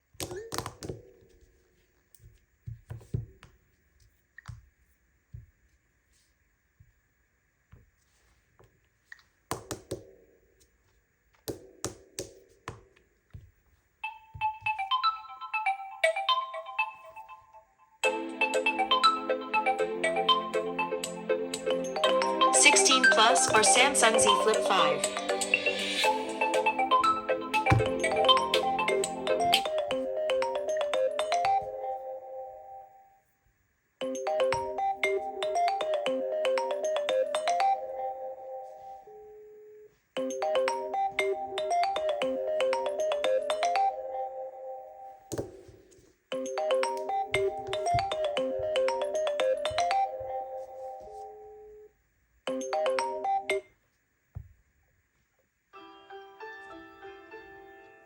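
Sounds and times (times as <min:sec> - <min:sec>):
phone ringtone melody: 0:14.0 - 0:32.9, 0:34.0 - 0:39.4, 0:40.2 - 0:45.2, 0:46.3 - 0:51.9.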